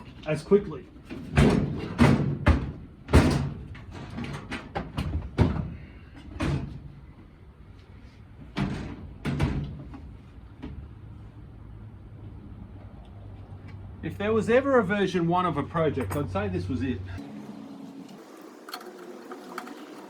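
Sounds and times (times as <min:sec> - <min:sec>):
knocks and clunks of parts: 0:01.0 - 0:06.9, 0:08.4 - 0:10.8.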